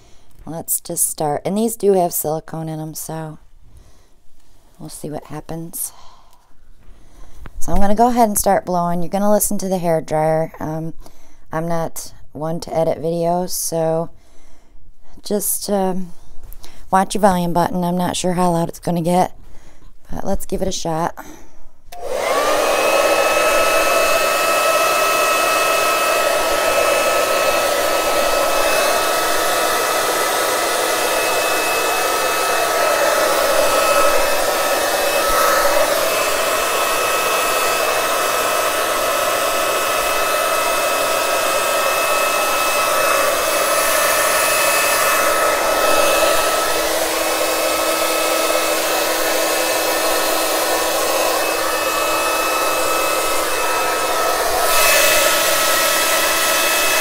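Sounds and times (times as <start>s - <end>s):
hair dryer running: 21.9s - 57.0s.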